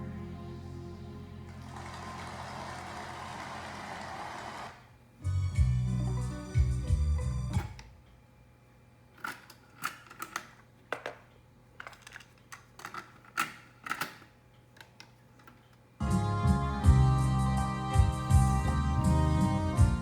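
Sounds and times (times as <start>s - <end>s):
music playing: 0.0s - 4.0s, 5.2s - 7.8s, 16.0s - 20.0s
faint steady hum: 0.0s - 20.0s.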